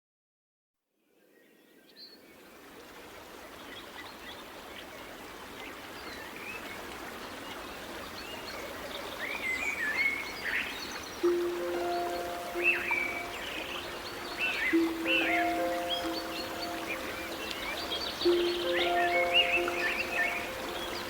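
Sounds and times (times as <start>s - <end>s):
running water: 10.1s - 21.0s
bird chirps: 11.2s - 21.0s.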